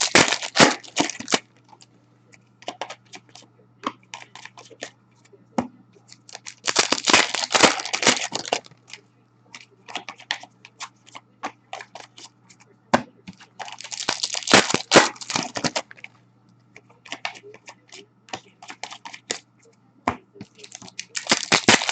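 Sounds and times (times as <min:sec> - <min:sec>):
card packs tearing: 0:00.0 - 0:01.4, 0:06.2 - 0:08.7, 0:13.6 - 0:16.1, 0:20.5 - 0:21.9
cards clicking and rustling: 0:00.0 - 0:01.9, 0:02.6 - 0:04.9, 0:06.1 - 0:12.6, 0:13.3 - 0:16.1, 0:17.1 - 0:19.4, 0:20.4 - 0:21.9.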